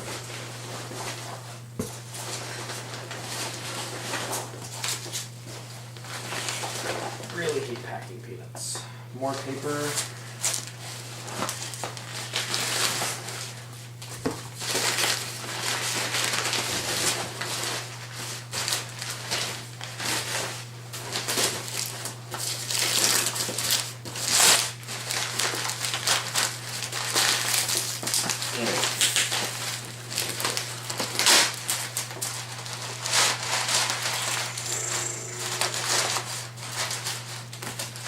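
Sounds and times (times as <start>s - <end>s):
packing paper crumpling: 21.0s - 38.0s.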